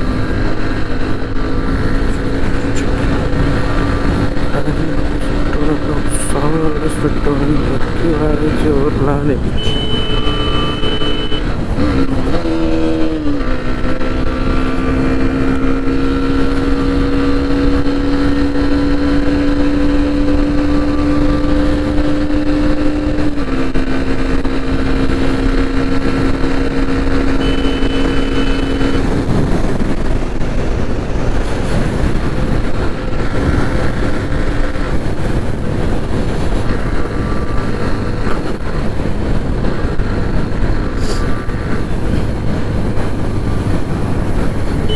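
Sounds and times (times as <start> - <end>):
steady droning tone: 0.0 - 13.8, 27.3 - 31.5
constant rushing noise: 0.0 - 44.9
motorcycle engine running: 0.0 - 44.9.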